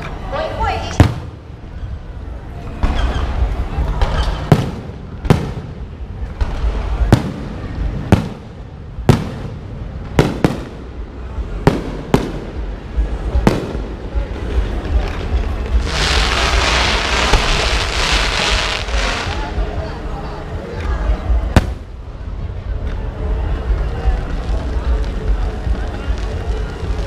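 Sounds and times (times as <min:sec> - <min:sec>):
low rumble: 0:00.0 - 0:27.0
fireworks crackling: 0:00.3 - 0:20.0, 0:21.3 - 0:22.8, 0:23.5 - 0:27.0
firework bangs: 0:00.8 - 0:01.8, 0:02.8 - 0:19.6, 0:21.5 - 0:22.0.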